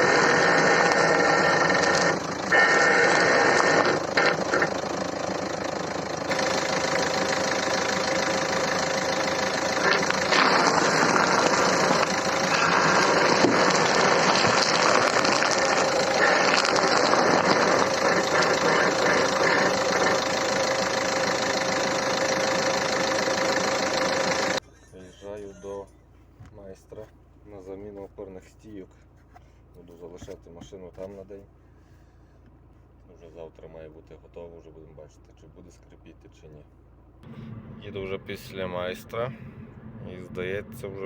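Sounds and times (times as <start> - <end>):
car engine idling: 0.0 - 41.0
suspension creaking: 6.3 - 21.8.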